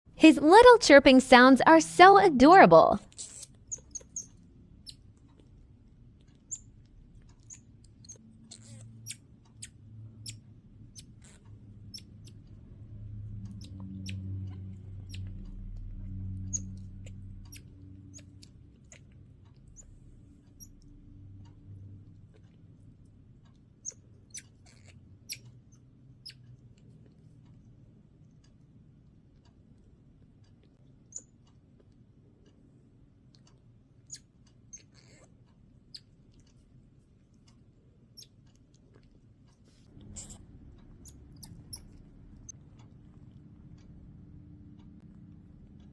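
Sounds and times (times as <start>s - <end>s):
monkey high-pitched chirps: 3.2s - 5.0s, 16.5s - 16.7s, 23.8s - 25.4s, 41.0s - 42.0s
low rumble: 39.9s - 45.9s.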